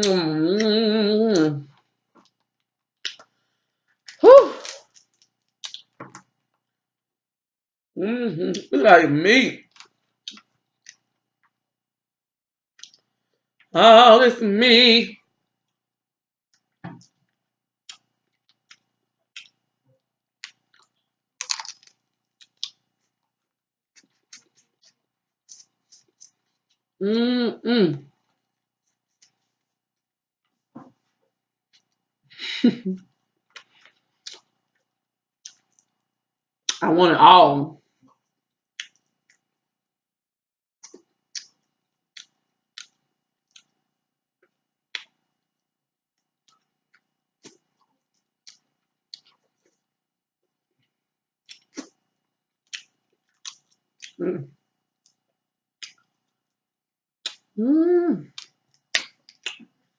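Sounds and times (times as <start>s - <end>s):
chewing crab legs: 16.6s - 26.9s, 33.5s - 36.1s, 40.8s - 45.3s, 50.7s - 56.5s, 58.2s - 59.9s
crab shell cracking: 21.4s - 22.8s.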